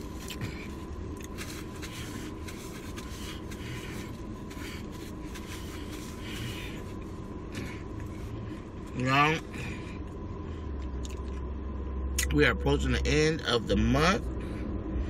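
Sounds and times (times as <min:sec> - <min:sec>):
chewing crunchy food: 0:00.0 - 0:02.3, 0:10.8 - 0:11.5
low hum: 0:00.0 - 0:15.0.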